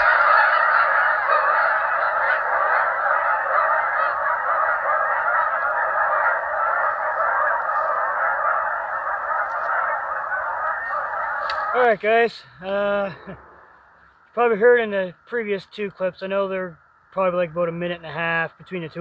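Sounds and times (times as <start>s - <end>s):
geese honking: 0.0s - 12.0s.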